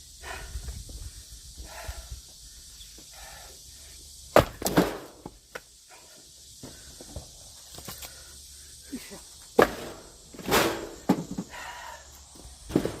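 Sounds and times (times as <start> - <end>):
axe splitting wood: 4.3 - 5.3.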